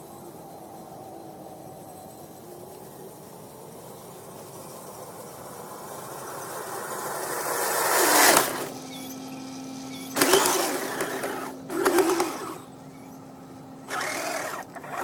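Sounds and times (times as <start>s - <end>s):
electric motor surging: 7.0s - 8.8s, 10.0s - 12.8s, 13.8s - 15.0s.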